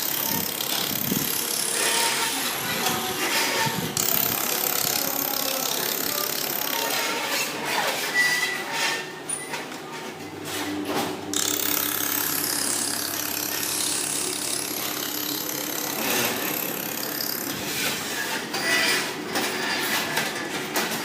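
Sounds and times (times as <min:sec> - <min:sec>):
thin high whine: 0:11.3 - 0:18.0
rapid irregular clicking: 0:11.4 - 0:17.6.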